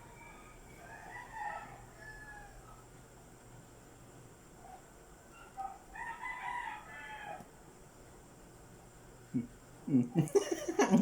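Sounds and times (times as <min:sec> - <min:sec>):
rooster crowing: 0:00.0 - 0:02.8, 0:05.9 - 0:07.5.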